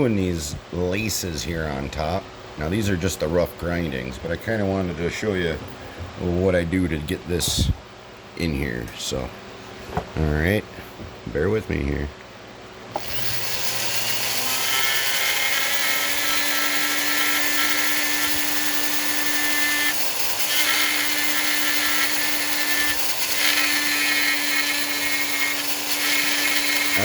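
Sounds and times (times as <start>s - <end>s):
rotary tool grinding wood: 13.0s - 27.0s.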